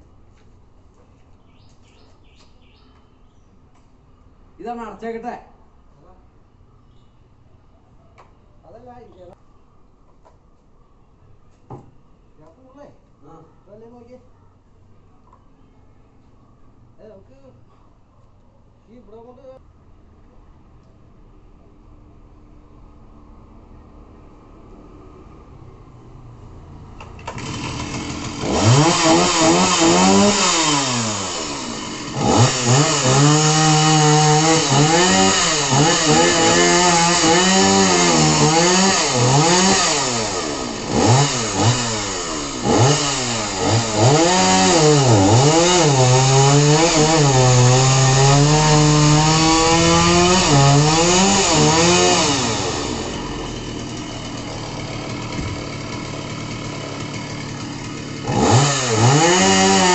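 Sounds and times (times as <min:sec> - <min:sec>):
chainsaw engine revving: 0:27.2 - 0:59.9.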